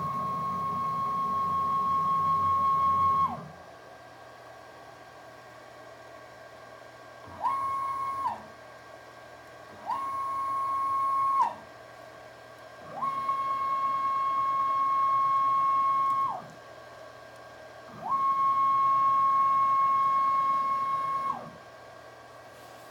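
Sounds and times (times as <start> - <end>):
motor whine rising in pitch: 0.0 - 3.5.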